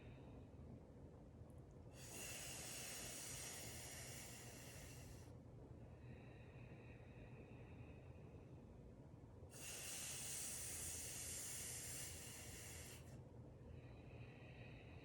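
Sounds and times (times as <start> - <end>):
hissing inhale through tongue: 2.0 - 5.3, 9.6 - 13.2
soft exhale through nose: 2.0 - 5.3, 9.6 - 13.2.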